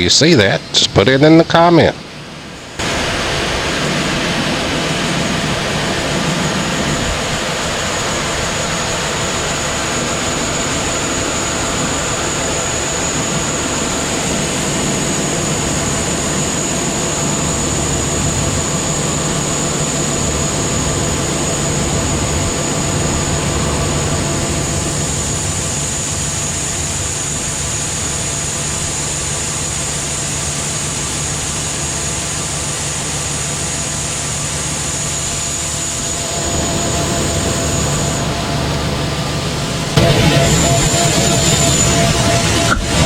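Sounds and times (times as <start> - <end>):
auger rushing with high whine: 35.4 - 43.0.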